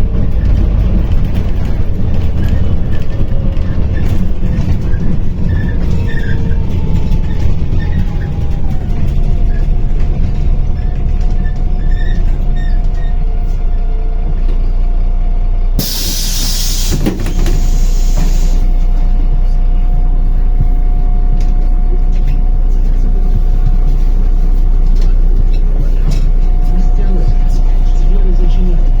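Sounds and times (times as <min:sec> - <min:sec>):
bus engine rumble: 0:00.0 - 0:29.0
compressed air hiss: 0:15.8 - 0:18.7.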